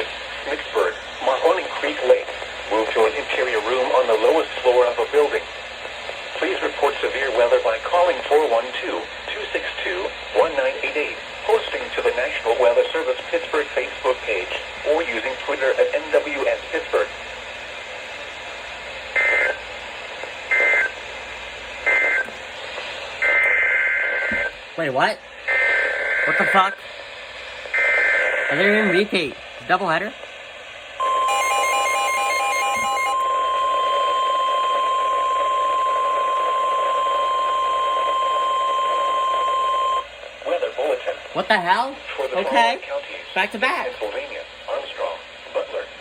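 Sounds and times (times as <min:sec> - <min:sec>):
radio hiss: 0:00.0 - 0:31.5, 0:32.8 - 0:46.0
steady high alarm tone: 0:31.0 - 0:40.1.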